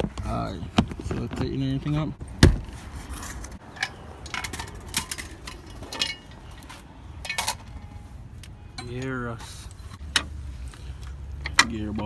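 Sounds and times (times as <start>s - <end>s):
hand tools clinking on metal: 3.1s - 7.9s.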